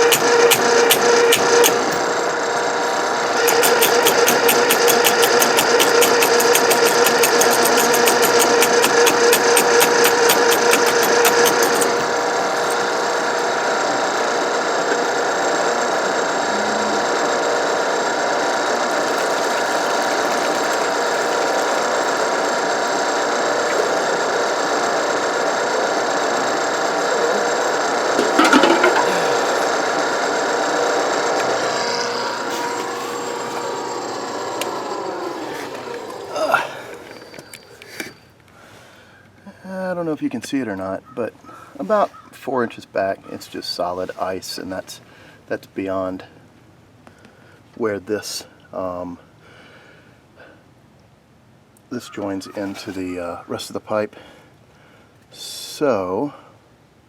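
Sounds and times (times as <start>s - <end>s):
drain machine motor knocking: 0.0s - 14.4s, 18.3s - 37.8s.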